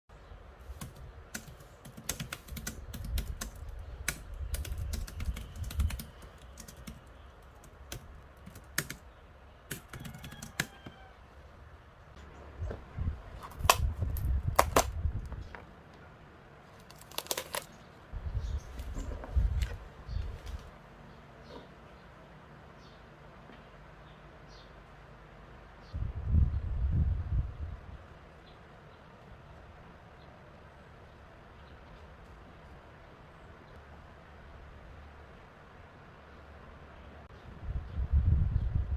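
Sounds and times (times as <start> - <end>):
mechanical keyboard typing clicks: 0.8 - 9.0, 9.7 - 10.8, 13.5 - 14.9.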